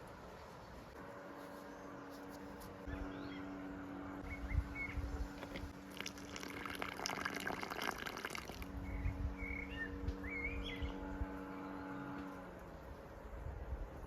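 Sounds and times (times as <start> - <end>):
steady low hum: 0.0 - 14.0
small birds chirping: 0.4 - 5.8, 8.8 - 12.3.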